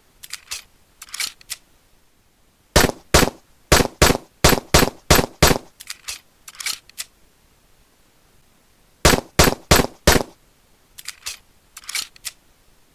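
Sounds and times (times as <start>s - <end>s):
pistol shots: 2.8s - 5.7s, 9.1s - 10.4s
light clicks and clatter: 11.0s - 12.4s.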